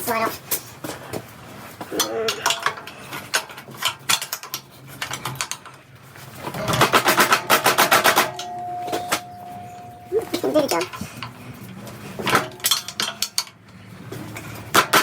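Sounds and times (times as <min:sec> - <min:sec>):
metal tools clanking: 0:06.4 - 0:14.7
steady tone: 0:06.6 - 0:11.0.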